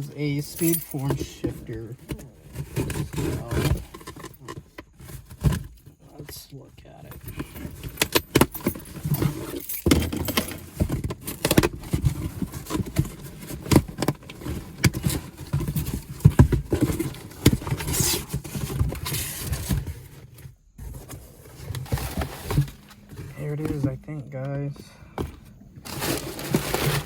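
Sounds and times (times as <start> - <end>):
packaging rustling: 7.2 - 24.0, 25.2 - 27.0.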